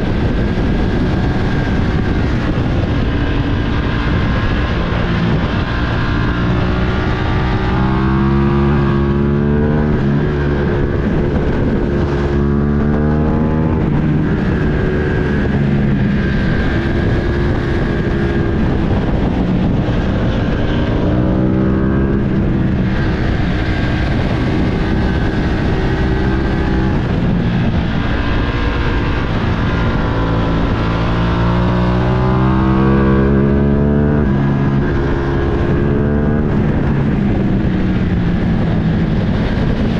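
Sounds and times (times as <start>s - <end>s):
motorcycle engine revving: 0.0s - 39.9s
wind rush: 0.0s - 39.9s.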